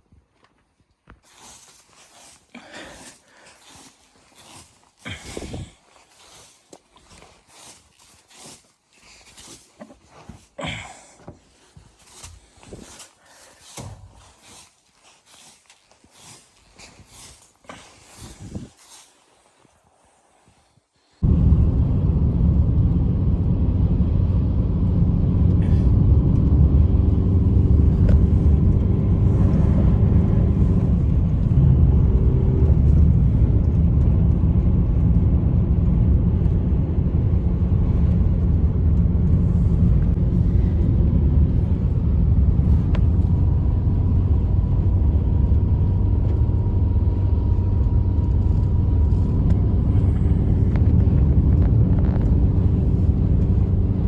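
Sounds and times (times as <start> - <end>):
blizzard wind rumbling: 1.2 - 54.0.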